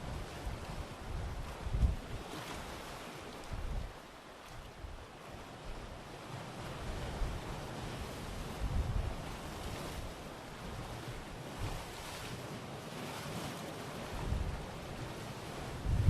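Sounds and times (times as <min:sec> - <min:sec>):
wind buffeting microphone: 0:00.0 - 0:02.8, 0:03.4 - 0:04.0, 0:06.7 - 0:12.3, 0:14.1 - 0:16.0
waves on a rocky shore: 0:00.0 - 0:16.0.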